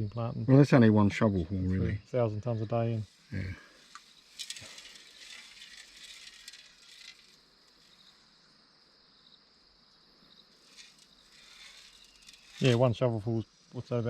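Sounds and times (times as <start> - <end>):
faint insects chirring: 0.0 - 14.0
scratchy rustle with clicks: 3.8 - 8.1, 10.6 - 12.9.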